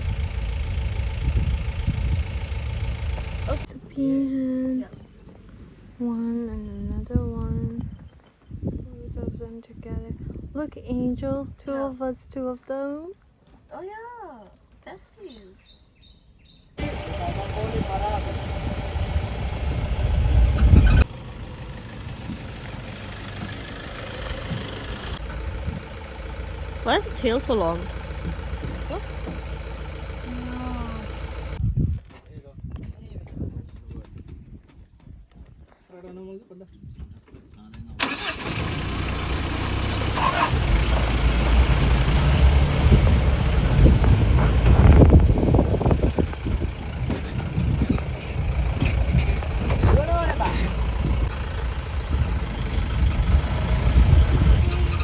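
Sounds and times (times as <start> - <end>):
jeep engine rumbling and idling: 0.0 - 3.7, 16.8 - 31.7, 38.0 - 55.0
road noise: 0.0 - 3.8, 16.8 - 31.6, 38.0 - 55.0.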